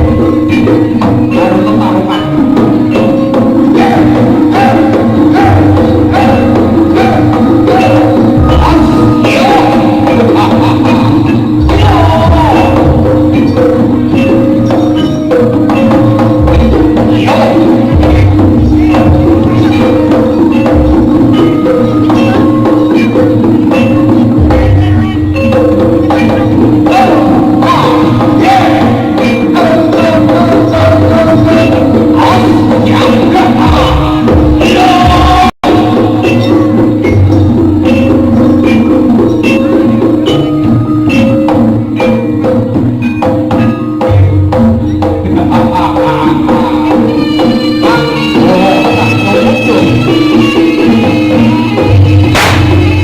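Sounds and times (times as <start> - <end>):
drum strokes: 0.0 - 53.0
gamelan music: 0.0 - 53.0
metal mallet instruments and gongs: 0.0 - 53.0
metallophone notes: 0.0 - 53.0.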